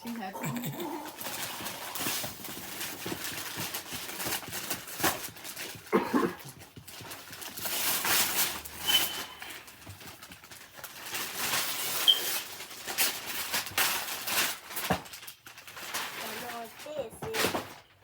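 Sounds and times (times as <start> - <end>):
wrapping paper tearing: 0.8 - 18.0
brief high squeaks: 8.8 - 9.5, 12.0 - 12.4.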